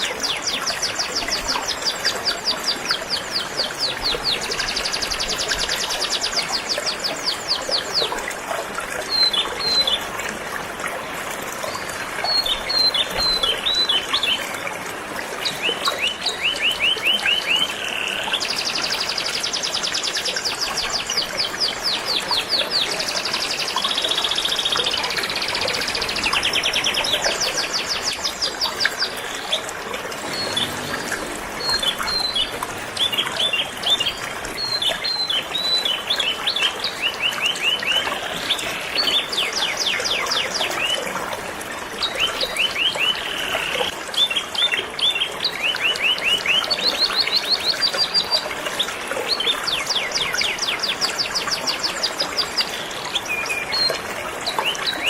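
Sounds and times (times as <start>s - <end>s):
river flowing: 0.0s - 55.0s.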